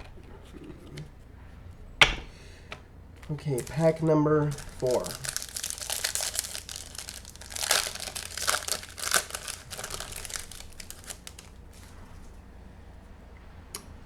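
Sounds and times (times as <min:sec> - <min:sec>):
foil pack tearing and crinkling: 0:03.2 - 0:12.0.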